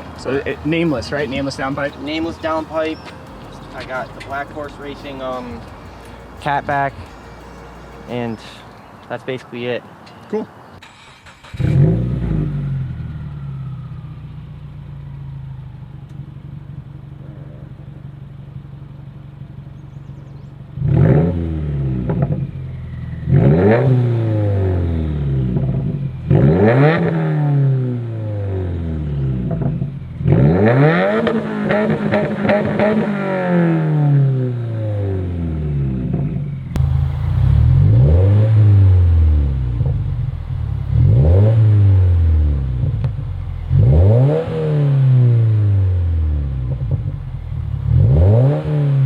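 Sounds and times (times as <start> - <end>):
car engine idling: 0.0 - 9.2, 10.8 - 20.8, 36.0 - 44.2, 45.5 - 48.1
car engine revving: 10.8 - 49.0.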